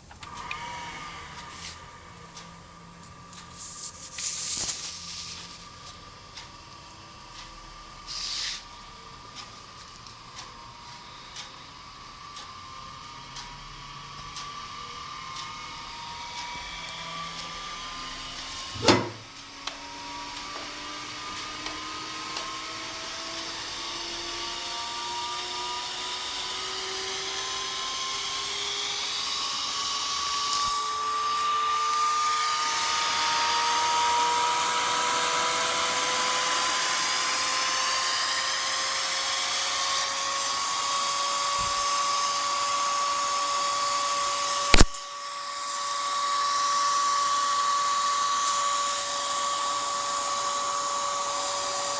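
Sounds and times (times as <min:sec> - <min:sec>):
computer fan whine: 0:00.0 - 0:51.9
sharp click: 0:18.8 - 0:19.4, 0:44.7 - 0:45.0.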